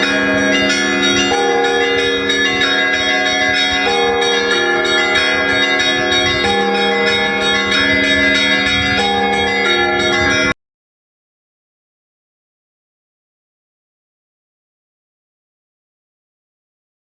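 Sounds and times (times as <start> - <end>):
church bells ringing: 0.0 - 10.6.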